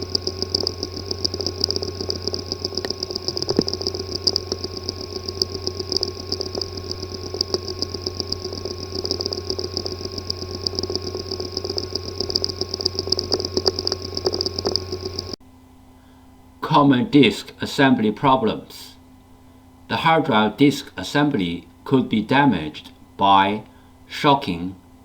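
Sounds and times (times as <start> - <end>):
hard drive clicks: 0.0 - 15.4
hard drive gritty ticking: 0.0 - 15.4
hard drive hum and whine: 0.0 - 25.0.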